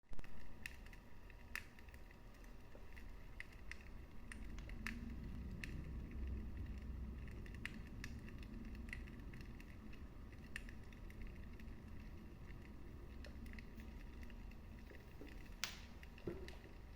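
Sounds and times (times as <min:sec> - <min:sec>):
wood fire crackling: 0:00.1 - 0:16.9.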